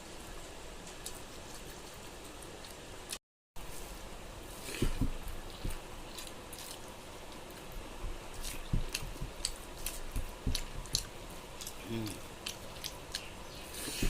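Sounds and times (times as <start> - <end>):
chewing and biting food: 4.6 - 14.0.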